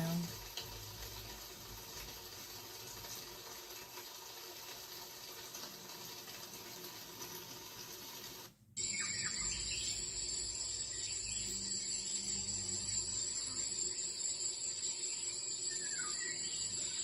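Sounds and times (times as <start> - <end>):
rain recording through small speaker: 0.0 - 17.0
high chirping crickets: 8.8 - 17.0.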